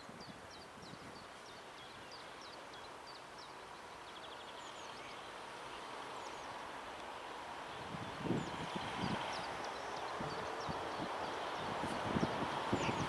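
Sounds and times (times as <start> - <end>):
diesel railcar hum: 5.8 - 13.0.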